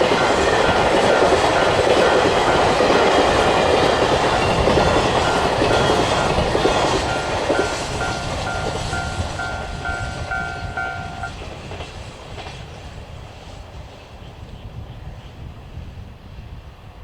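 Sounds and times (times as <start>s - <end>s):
level crossing alarm ringing: 0.0s - 11.3s
train wheels clattering over rails: 0.0s - 13.3s.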